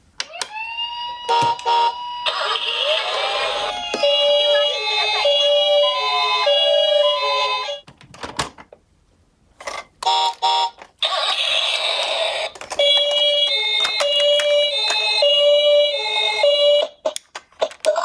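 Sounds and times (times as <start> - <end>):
toy two-tone siren: 0.3 - 7.8, 10.1 - 16.9.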